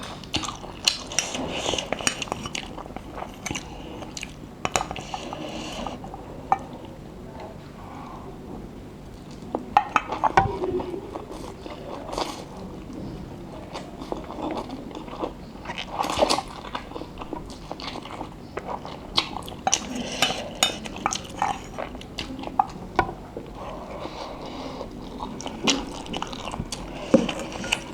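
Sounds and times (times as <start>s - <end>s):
utensils clinking against bowl: 19.6s - 23.2s.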